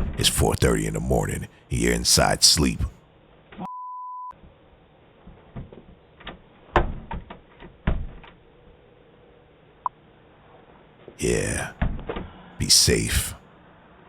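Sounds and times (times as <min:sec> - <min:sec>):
censor bleep: 0:03.6 - 0:04.3.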